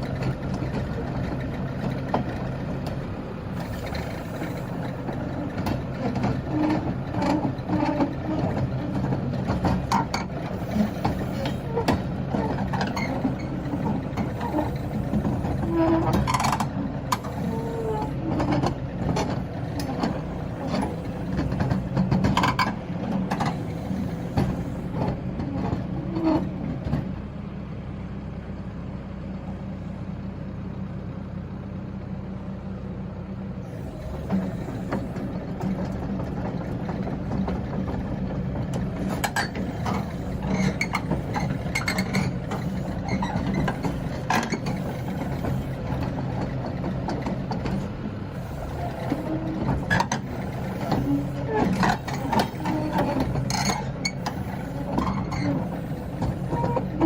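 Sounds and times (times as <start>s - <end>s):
excavator diesel engine running: 0.0s - 57.0s
machine clanks and knocks: 3.8s - 25.9s.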